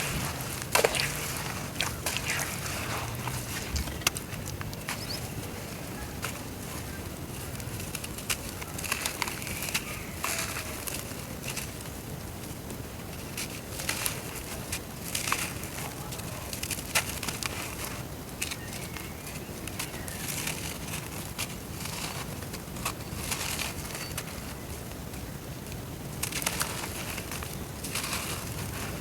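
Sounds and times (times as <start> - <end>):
dirt clods crackling in water: 0.0 - 12.0, 13.0 - 29.0
fizzing: 0.1 - 5.2.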